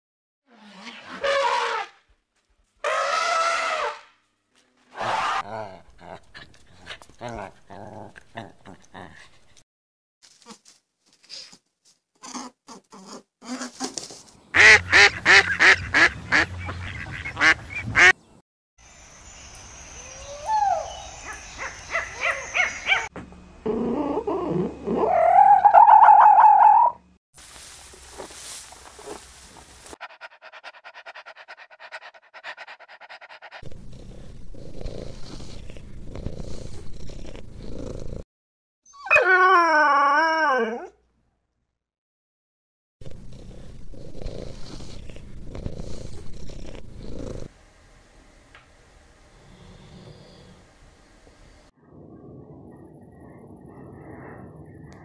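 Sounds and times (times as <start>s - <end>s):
animal wavering drawn-out call: 2.9s - 4.0s, 20.0s - 23.1s, 23.7s - 27.0s
duck quacking: 14.6s - 18.2s
animal pulsing chatter: 20.5s - 23.1s
animal rasping sound: 28.9s - 38.2s, 43.0s - 47.5s.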